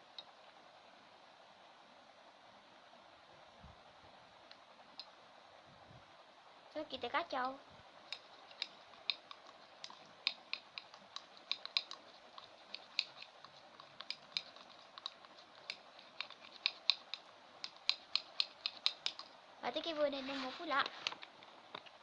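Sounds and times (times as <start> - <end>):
spoon clicking against container: 8.1 - 19.3.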